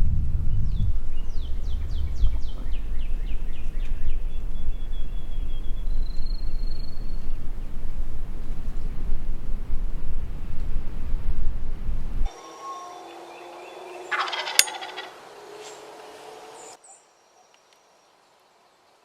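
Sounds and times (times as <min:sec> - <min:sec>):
wind rumble on microphone: 0:00.0 - 0:12.4
songbird singing: 0:00.4 - 0:19.0.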